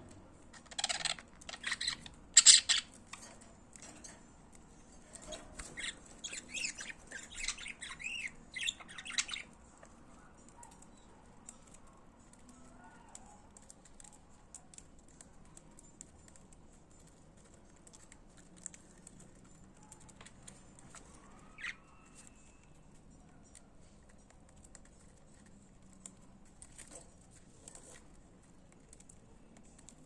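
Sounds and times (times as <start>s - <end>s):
budgerigars chirping and warbling: 0.6s - 3.2s, 5.2s - 9.6s, 21.4s - 22.2s.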